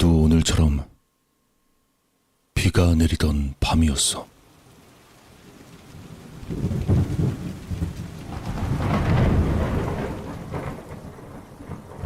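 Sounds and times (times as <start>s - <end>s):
falling rain: 2.6s - 12.0s
thunder rumbling: 5.2s - 12.0s.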